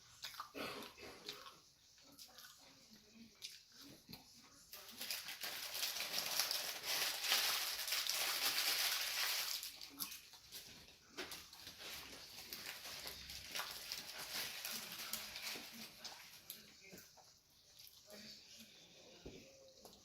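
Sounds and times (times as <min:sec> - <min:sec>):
chewing and mouth noises: 0:00.0 - 0:04.5, 0:09.7 - 0:18.8.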